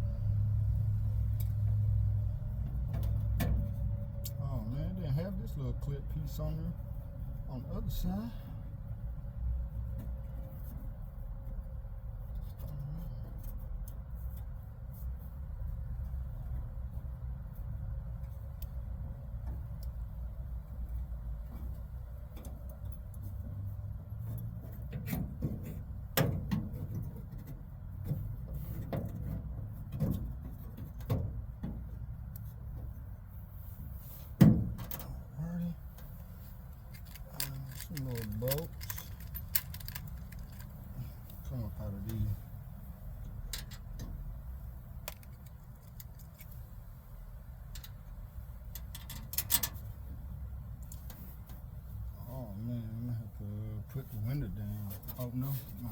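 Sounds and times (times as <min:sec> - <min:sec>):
steady low hum: 0:00.0 - 0:55.9
clicks and light knocks: 0:36.0 - 0:41.5.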